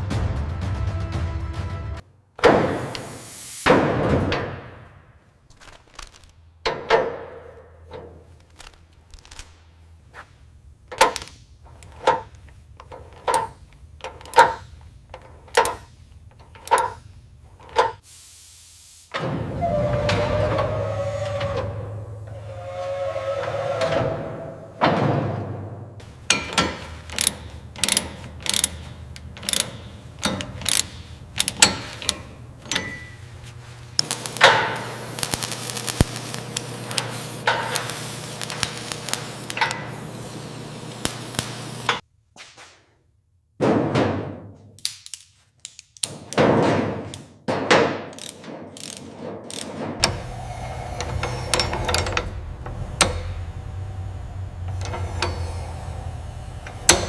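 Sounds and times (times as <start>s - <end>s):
ratchet-like metal clicks: 26.3s - 33.0s, 48.1s - 50.2s
low hum: 50.0s - 57.0s.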